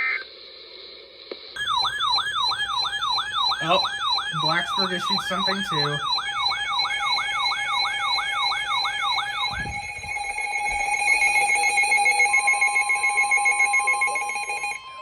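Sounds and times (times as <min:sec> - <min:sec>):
warbling electronic tones: 0:01.6 - 0:12.3
steady electronic tone: 0:01.6 - 0:13.0
whooping siren tone: 0:01.6 - 0:15.0.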